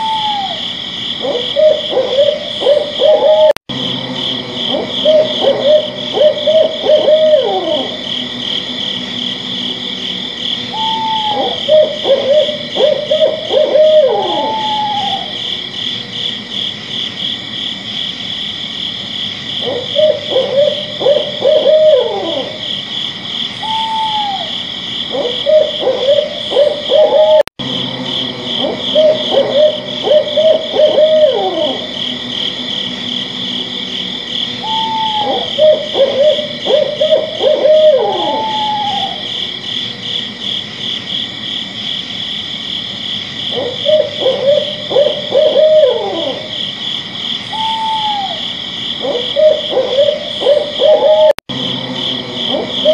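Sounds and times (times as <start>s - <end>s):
owl rising and falling call: 0.0s - 3.6s, 4.6s - 15.4s, 19.6s - 22.7s, 23.5s - 27.5s, 28.5s - 39.5s, 43.5s - 46.6s, 47.4s - 52.9s
owl hooting: 0.0s - 16.5s, 19.6s - 40.4s, 43.4s - 46.8s, 47.4s - 52.9s
night insects chorus: 0.0s - 52.9s.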